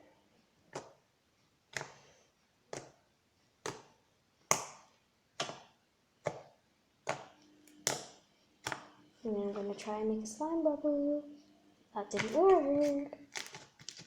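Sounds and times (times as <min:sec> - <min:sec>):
sticky slime popping: 0:03.6 - 0:08.9, 0:12.1 - 0:14.0.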